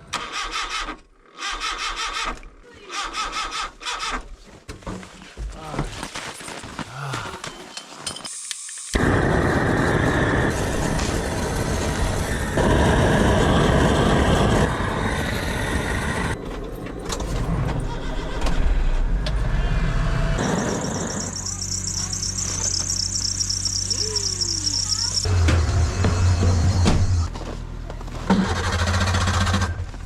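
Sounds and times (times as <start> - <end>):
truck engine running: 9.0 - 30.0
high insect-like chirring: 20.4 - 25.3.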